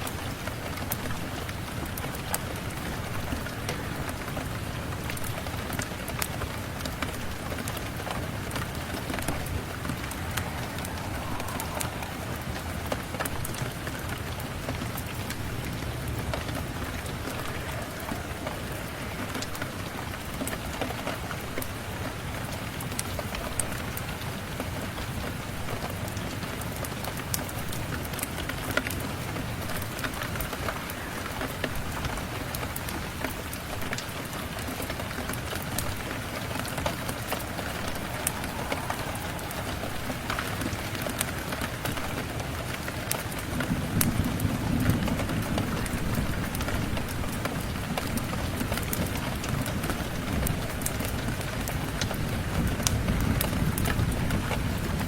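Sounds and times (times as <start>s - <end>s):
steady rain falling: 0.0s - 55.0s
log fire crackling: 0.3s - 21.9s, 31.9s - 45.0s.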